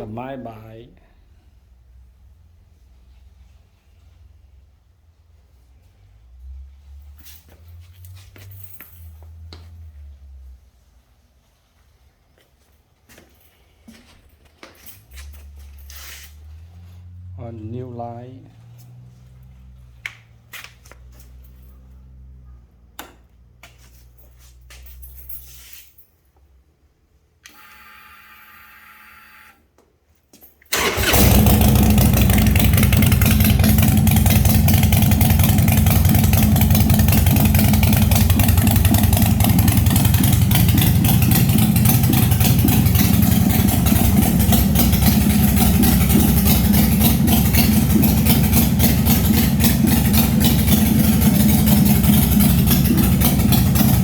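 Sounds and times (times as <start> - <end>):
motorcycle engine starting and idling: 30.7 - 54.0.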